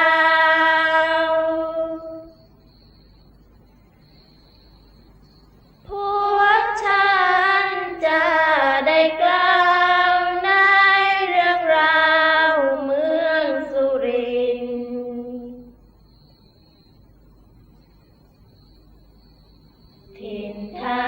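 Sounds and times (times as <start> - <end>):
woman singing: 0.0 - 2.3, 5.9 - 15.7, 20.1 - 21.0.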